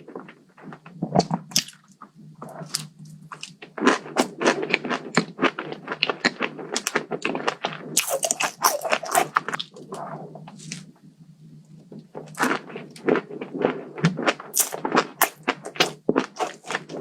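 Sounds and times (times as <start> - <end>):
person chewing crunchy food: 0.1 - 10.9, 11.9 - 17.0.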